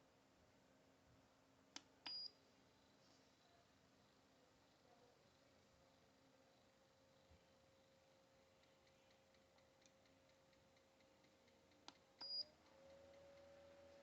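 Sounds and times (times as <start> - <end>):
portable fan humming: 1.4 - 14.0
light ticking: 8.4 - 13.7.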